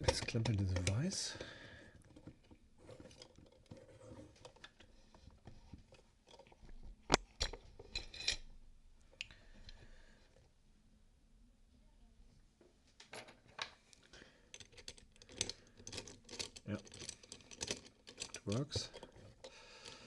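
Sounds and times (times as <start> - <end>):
metallic clicks and rattles: 0.0 - 4.9, 14.5 - 20.0.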